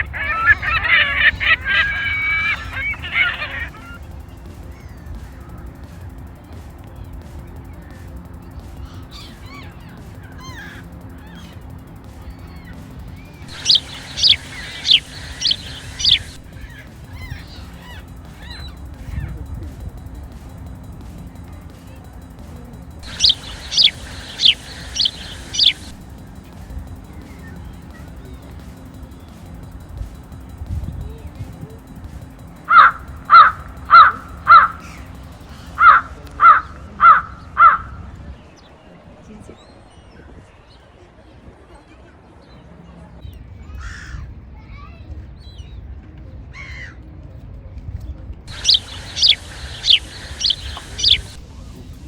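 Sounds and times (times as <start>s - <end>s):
gull calls: 0.0s - 4.1s, 13.5s - 19.3s, 23.0s - 26.0s, 32.7s - 38.0s, 48.5s - 51.4s
sharp bird chirps: 0.0s - 38.8s, 48.5s - 51.5s
low background rumble: 0.0s - 40.6s, 42.6s - 52.0s.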